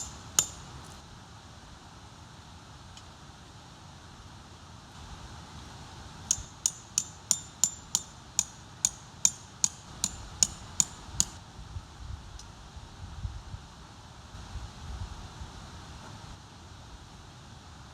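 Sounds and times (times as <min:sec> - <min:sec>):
hammer ringing on tent peg: 0:00.0 - 0:01.0, 0:06.3 - 0:11.4.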